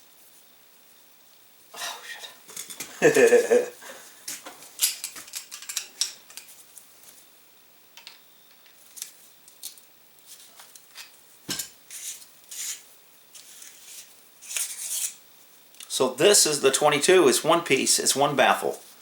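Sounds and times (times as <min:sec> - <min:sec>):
small metal parts clinking: 0:04.8 - 0:06.5.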